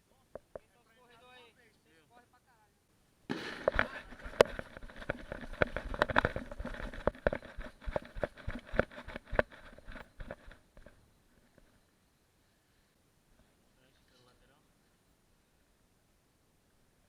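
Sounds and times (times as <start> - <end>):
running footsteps: 3.3 - 11.0
clothing and gear rattling: 3.4 - 11.6.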